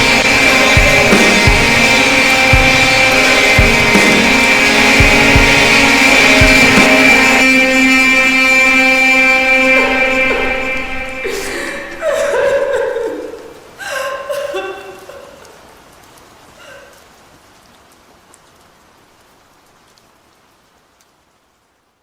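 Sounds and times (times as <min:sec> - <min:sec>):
short pitched sound: 0:00.0 - 0:12.2
rain hiss: 0:00.0 - 0:22.0.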